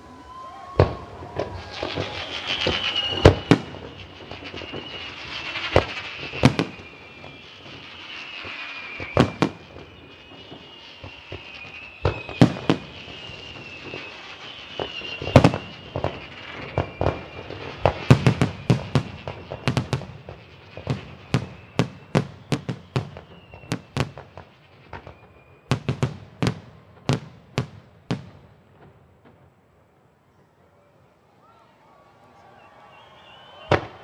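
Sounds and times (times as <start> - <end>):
high wavering whistle: 0.0 - 20.2, 20.8 - 24.2, 32.4 - 34.0
fireworks banging: 0.7 - 29.6, 33.2 - 34.0.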